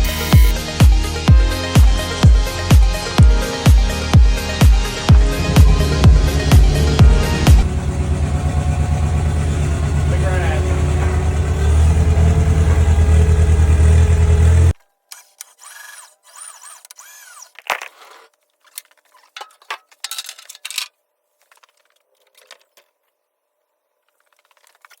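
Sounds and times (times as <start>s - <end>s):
heavy engine rumbling: 5.1s - 14.8s.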